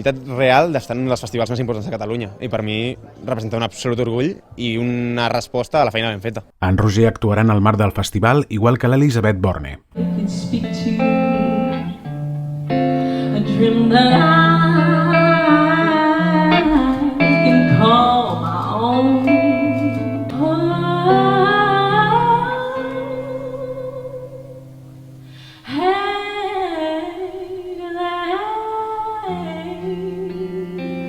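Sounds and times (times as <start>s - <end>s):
guitar: 9.9s - 31.0s
person singing: 10.0s - 12.1s, 12.7s - 31.0s.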